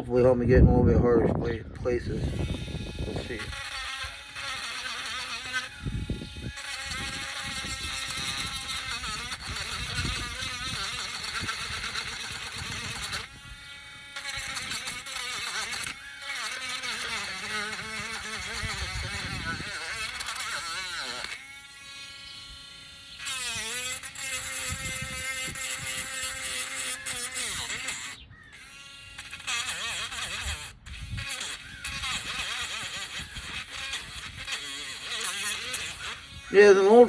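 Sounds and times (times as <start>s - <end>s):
rotary tool motor whine: 1.8s - 37.0s.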